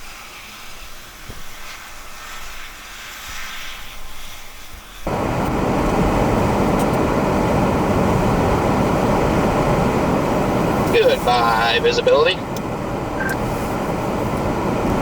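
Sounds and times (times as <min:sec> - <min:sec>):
blizzard wind buffeting microphone: 0:05.0 - 0:15.0.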